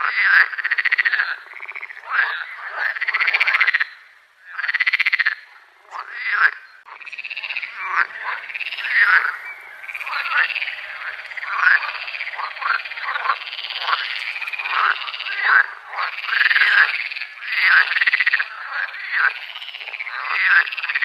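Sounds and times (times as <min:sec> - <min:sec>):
frogs trilling: 0:00.0 - 0:21.0
short frog calls: 0:00.0 - 0:21.0.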